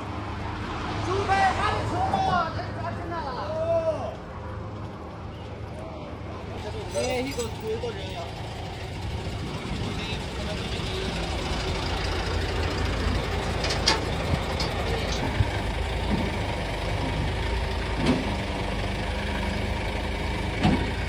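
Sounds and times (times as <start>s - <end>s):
truck engine running: 6.2s - 21.0s
sharp metal clanks and knocks: 6.6s - 8.2s, 13.3s - 15.5s.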